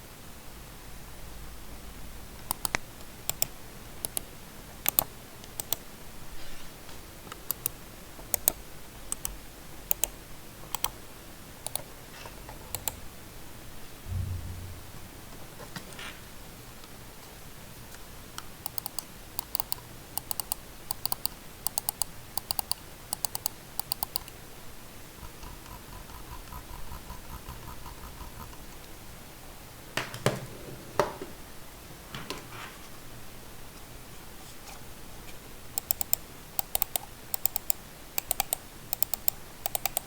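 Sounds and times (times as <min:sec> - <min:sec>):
mouse buttons clicking: 0:02.5 - 0:05.8, 0:07.5 - 0:10.9, 0:11.6 - 0:11.9, 0:18.6 - 0:24.4, 0:35.8 - 0:40.0
scroll wheel ticking: 0:02.5 - 0:05.8, 0:07.5 - 0:11.0, 0:11.6 - 0:11.9, 0:18.6 - 0:24.4, 0:25.2 - 0:28.7, 0:35.8 - 0:40.0
heavier knocks: 0:14.1 - 0:15.5.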